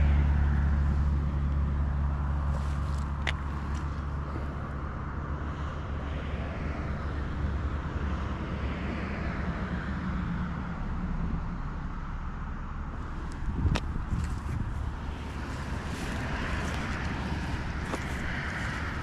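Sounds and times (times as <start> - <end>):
low engine drone: 0.0 - 19.0
broad rushing noise: 12.9 - 19.0.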